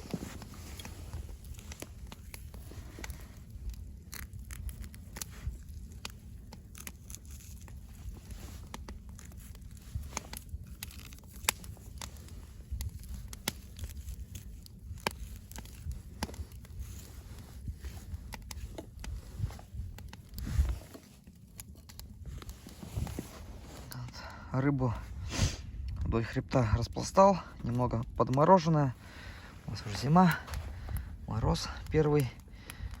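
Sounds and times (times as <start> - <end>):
knife cutting and scraping fish: 0.0 - 23.5.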